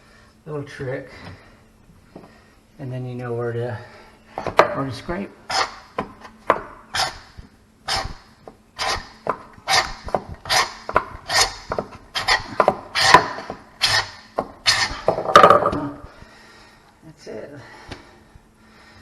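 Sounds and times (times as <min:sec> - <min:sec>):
hand scraper scraping hardwood: 0:05.5 - 0:05.8, 0:06.9 - 0:08.2, 0:08.8 - 0:15.2.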